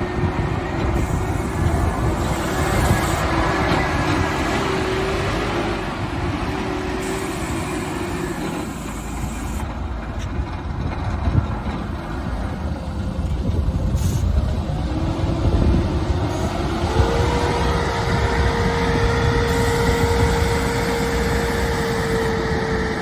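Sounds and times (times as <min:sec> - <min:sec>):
backhoe engine running: 0:00.0 - 0:23.0.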